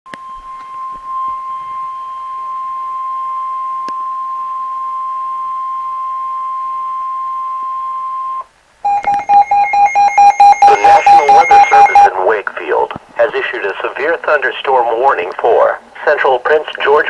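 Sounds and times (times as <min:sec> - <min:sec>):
steady alert tone: 0:08.8 - 0:12.1
rapid electronic beeping: 0:08.9 - 0:12.1.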